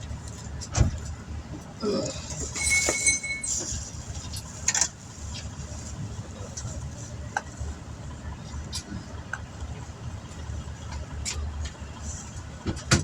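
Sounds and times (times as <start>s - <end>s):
metallic clinks of tools: 2.5s - 3.7s.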